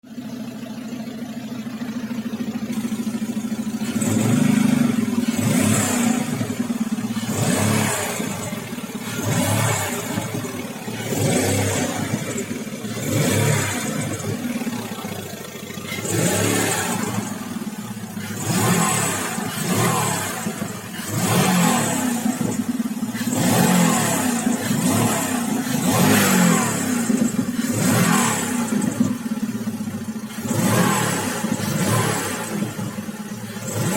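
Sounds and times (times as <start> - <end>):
car engine revving: 2.7 - 33.9.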